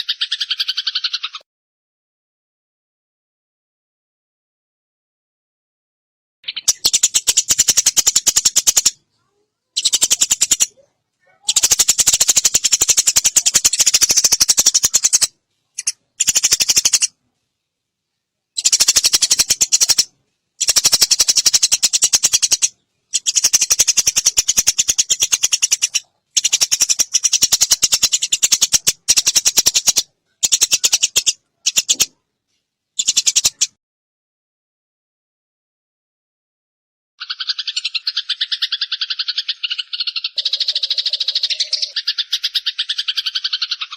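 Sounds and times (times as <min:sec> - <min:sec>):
sparrow chattering: 0:00.0 - 0:01.4, 0:06.4 - 0:17.2, 0:18.6 - 0:32.2, 0:33.0 - 0:33.8, 0:37.2 - 0:43.9.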